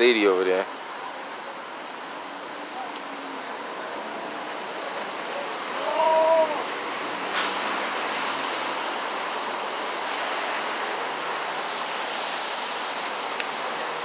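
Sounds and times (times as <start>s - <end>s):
road traffic rushing past: 0.0s - 14.0s
sharp rush of noise: 0.8s - 14.0s.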